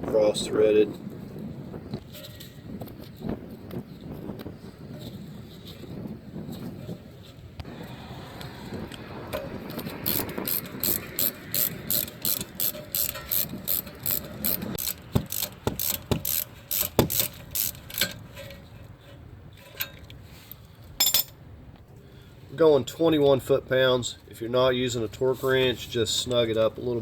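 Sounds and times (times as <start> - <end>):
socket ratchet clicking: 9.7 - 18.2.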